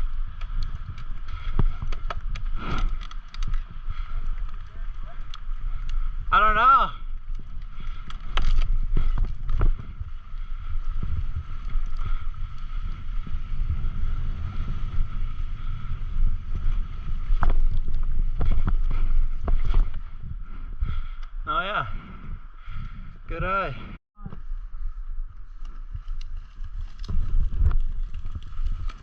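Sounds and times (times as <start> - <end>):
mountain bike rattling and knocking: 0.0 - 13.0
wind buffeting microphone: 0.0 - 29.0.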